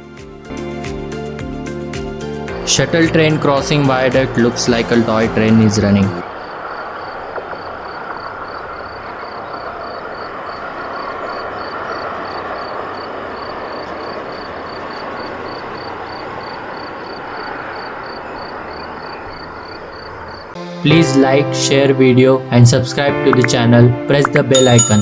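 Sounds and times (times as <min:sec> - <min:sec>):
railcar engine and wheels: 0:03.9 - 0:20.6.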